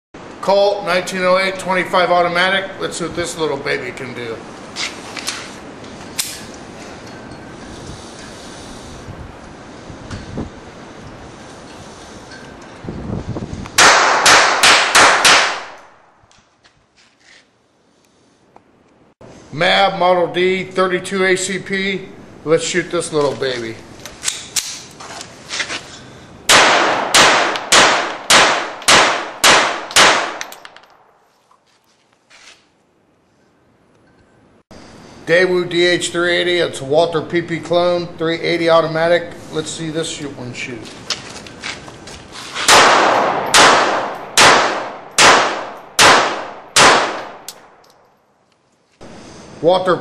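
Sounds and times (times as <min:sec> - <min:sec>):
pistol shots with ringing tail: 0:13.8 - 0:16.0, 0:26.5 - 0:31.1, 0:42.7 - 0:47.8.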